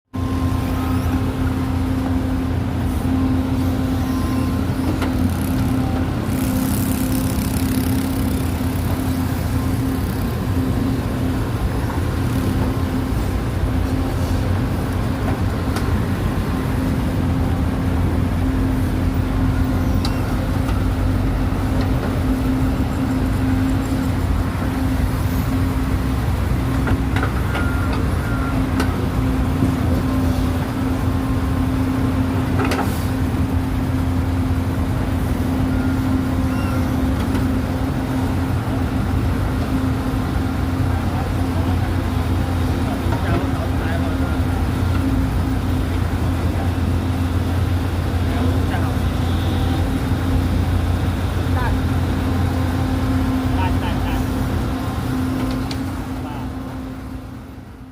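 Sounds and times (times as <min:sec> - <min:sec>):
heavy machinery engine rumbling: 0:00.1 - 0:57.9.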